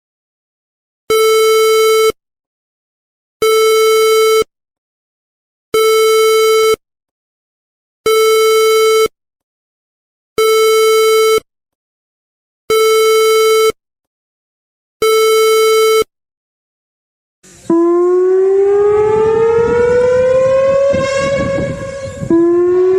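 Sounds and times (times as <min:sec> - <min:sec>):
buzzy electronic beeps: 0:17.7 - 0:22.9.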